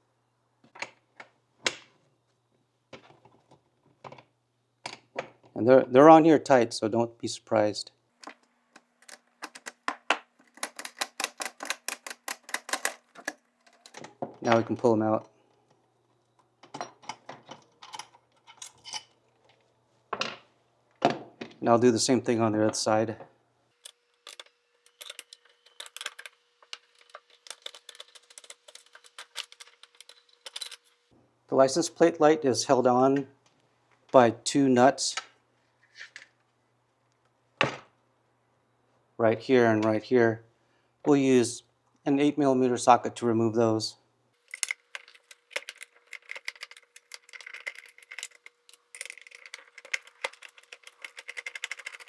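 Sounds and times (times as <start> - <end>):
socket ratchet clicking: 10.4 - 14.0, 44.5 - 52.0.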